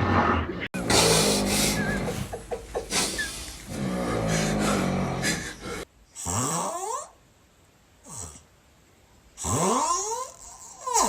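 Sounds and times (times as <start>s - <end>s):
person snoring: 0.8s - 7.1s.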